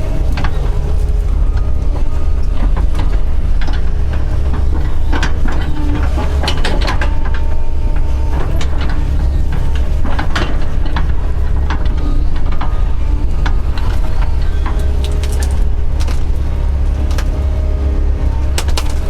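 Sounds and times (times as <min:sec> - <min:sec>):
excavator diesel engine running: 0:00.0 - 0:19.0
sharp cracks and clatter: 0:13.8 - 0:17.6, 0:18.5 - 0:19.0.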